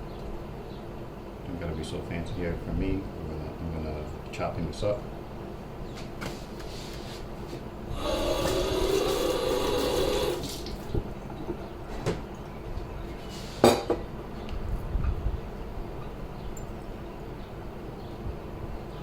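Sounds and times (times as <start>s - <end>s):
water running: 8.0s - 10.8s.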